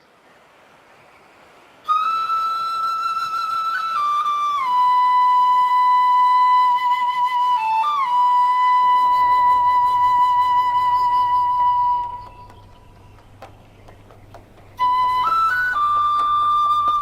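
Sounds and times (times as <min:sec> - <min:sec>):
faint hiss: 0:00.0 - 0:17.0
wind instrument long notes: 0:01.9 - 0:12.8, 0:14.8 - 0:17.0.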